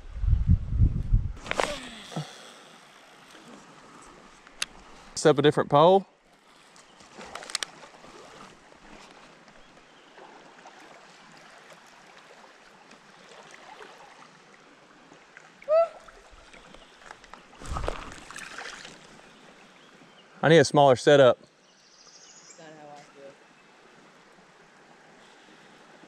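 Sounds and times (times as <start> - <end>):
faint creek water running: 1.4 - 26.0
splash in water: 17.6 - 19.2.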